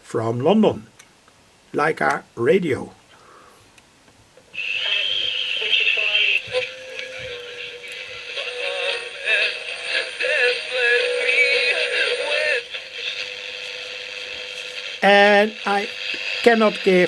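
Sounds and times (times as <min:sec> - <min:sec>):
music with singing on radio: 0:04.6 - 0:17.0
steady radio tone: 0:04.6 - 0:17.0.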